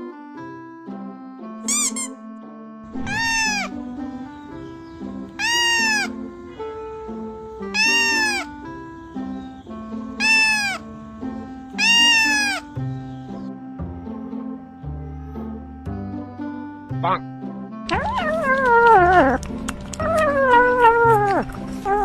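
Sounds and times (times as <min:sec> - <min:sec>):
background music: 0:00.0 - 0:22.0
animal calling: 0:02.9 - 0:12.9, 0:17.9 - 0:22.0.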